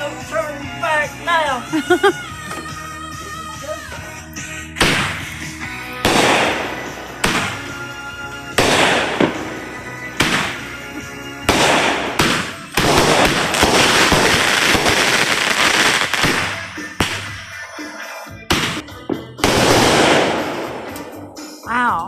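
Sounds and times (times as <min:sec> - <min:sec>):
fireworks bangs: 0:04.8 - 0:07.9, 0:08.5 - 0:17.6, 0:18.5 - 0:21.2
fireworks crackling: 0:04.8 - 0:21.1.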